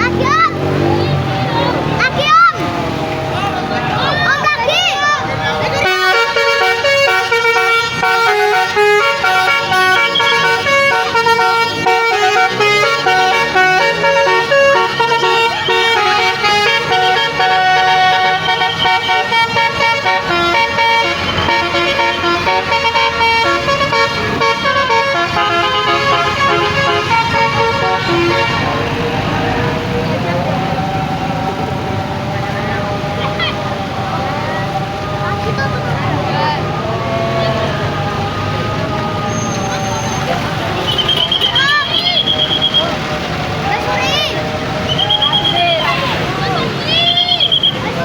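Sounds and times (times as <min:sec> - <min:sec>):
musical bus horn melody: 0:02.6 - 0:30.5, 0:35.0 - 0:43.3.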